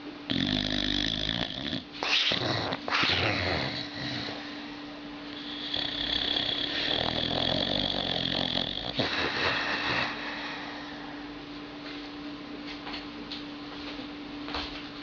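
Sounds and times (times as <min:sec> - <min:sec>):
animal snoring: 0:00.3 - 0:04.6, 0:05.3 - 0:10.5.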